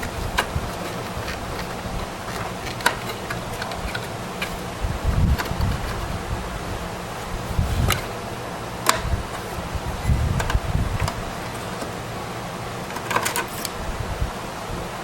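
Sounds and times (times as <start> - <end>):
computer parts clicking and knocking: 0.0 - 6.1, 8.8 - 12.0, 12.8 - 13.7.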